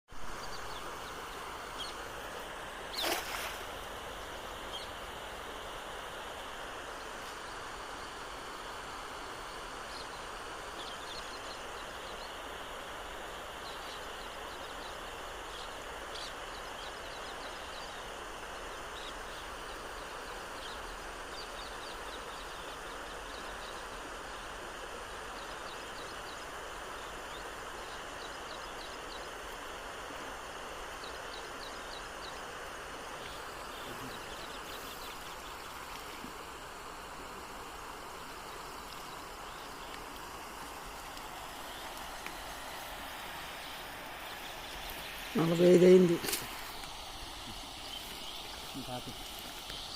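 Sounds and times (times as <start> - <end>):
river water rushing: 0.2 - 18.7, 28.8 - 49.9.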